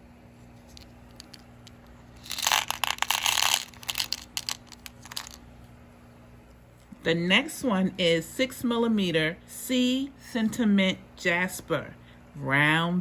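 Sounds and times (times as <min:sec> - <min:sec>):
beads clicking and rustling: 0:00.6 - 0:05.4
packaging crinkling: 0:00.6 - 0:05.4.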